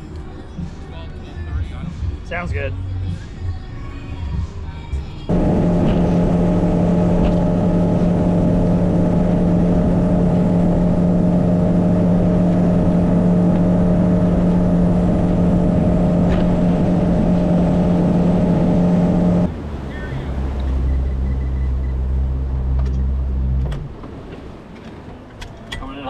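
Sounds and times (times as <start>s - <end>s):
outboard motor running: 5.3s - 21.2s.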